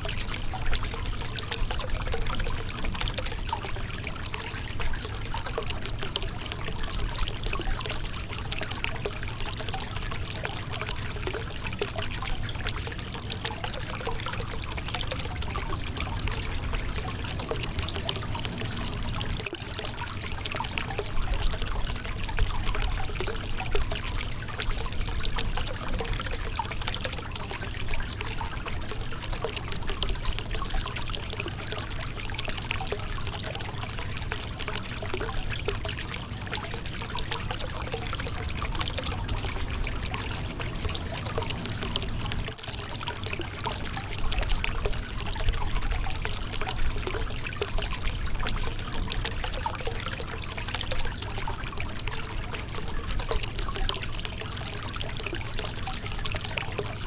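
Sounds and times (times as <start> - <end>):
river water trickling over rocks: 0.0 - 57.0.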